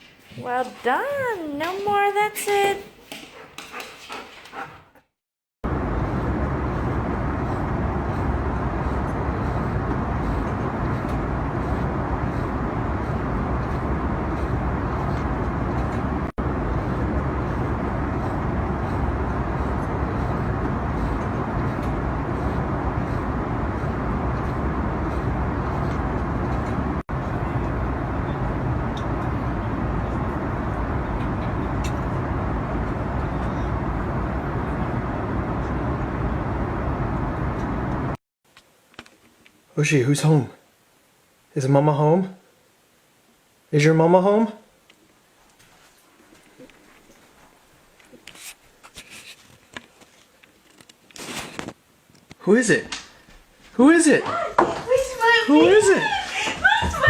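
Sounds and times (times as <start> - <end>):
road vehicle rumbling: 5.6 - 38.2.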